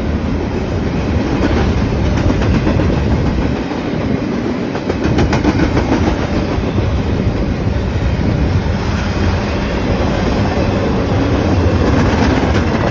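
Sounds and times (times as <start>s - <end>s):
freight train wheels rumbling: 0.0s - 12.9s
wheels clicking over rail joints: 0.9s - 7.8s, 10.3s - 12.9s.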